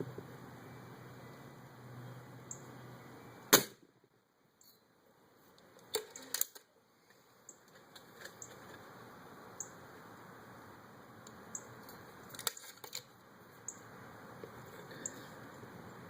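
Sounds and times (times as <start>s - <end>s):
air rifle shot: 3.5s - 3.8s.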